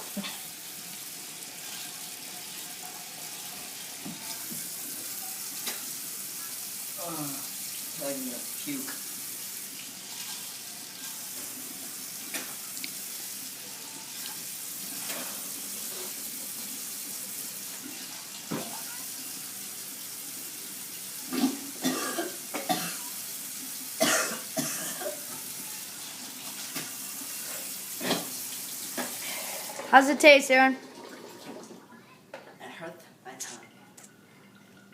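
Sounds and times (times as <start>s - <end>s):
person coughing harshly: 21.3s - 23.0s, 24.0s - 25.2s.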